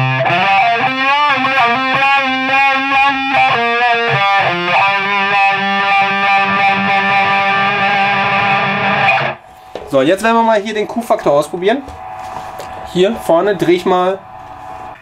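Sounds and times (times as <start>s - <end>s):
distorted wah electric guitar: 0.0s - 9.4s.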